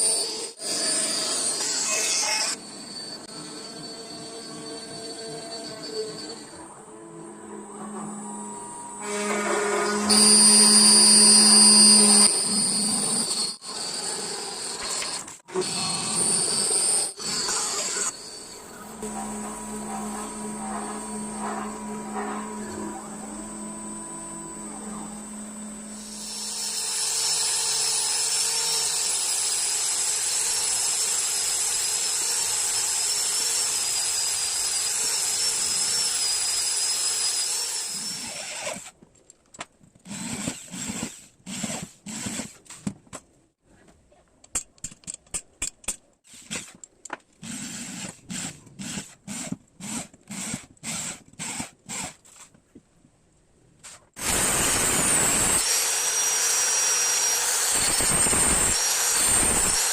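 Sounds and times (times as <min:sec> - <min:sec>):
high-speed power tool whining: 0:00.0 - 0:38.9, 0:54.2 - 0:59.9.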